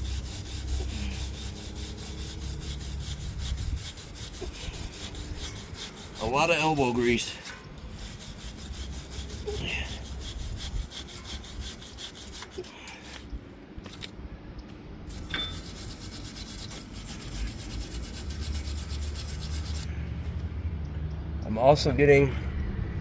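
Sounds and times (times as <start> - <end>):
scrubbing metal with abrasive pad: 0.0 - 13.3, 15.1 - 19.9.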